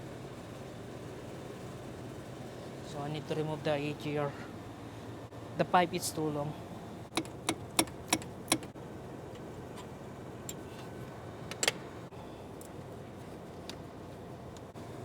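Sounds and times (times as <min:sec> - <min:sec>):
hand tools clicking on metal: 0:07.1 - 0:08.7.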